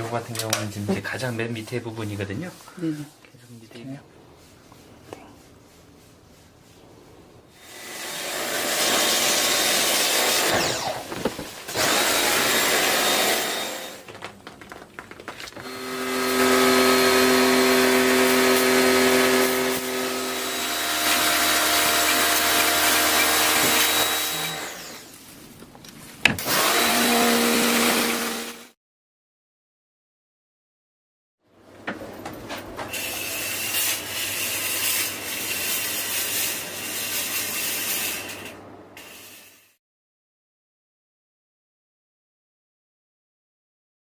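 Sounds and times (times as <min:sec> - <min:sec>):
cleaning machine hissing: 0:07.5 - 0:10.9, 0:11.6 - 0:14.0, 0:32.9 - 0:39.8.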